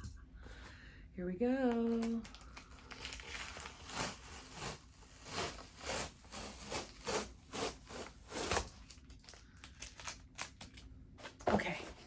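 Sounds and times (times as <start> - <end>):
box cutter slicing cardboard: 3.8 - 8.7.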